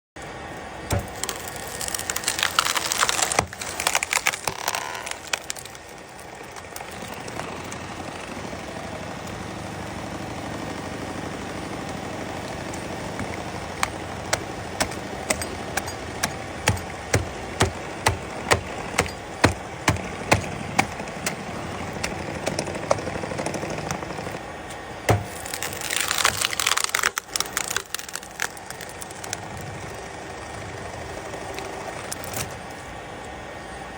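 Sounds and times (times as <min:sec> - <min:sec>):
steady machine hum: 0:00.2 - 0:33.9
wood scraping or cutting: 0:00.9 - 0:32.8
sharp knocks on wood: 0:25.1 - 0:25.4.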